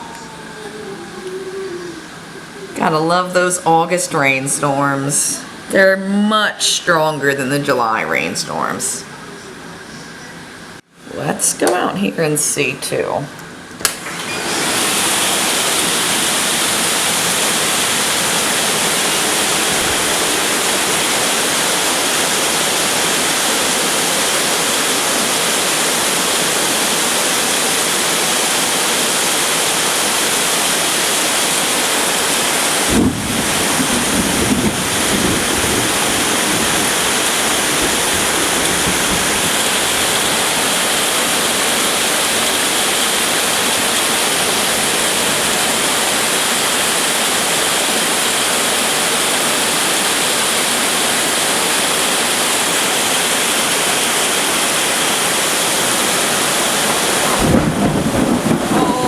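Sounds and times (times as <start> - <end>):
heavy rain pouring: 0.0 - 11.3, 13.4 - 59.0
low thunder rumble: 17.3 - 22.4, 32.9 - 40.9, 56.2 - 59.0.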